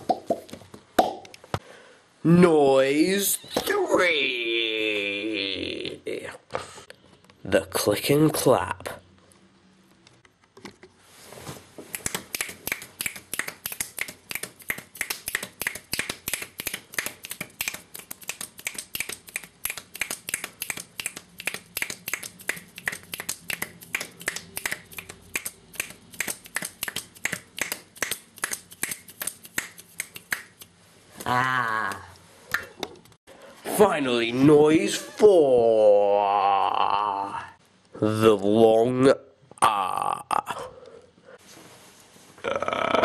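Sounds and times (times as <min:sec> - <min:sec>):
person making clicks and claps: 0:11.9 - 0:30.8, 0:31.6 - 0:33.2.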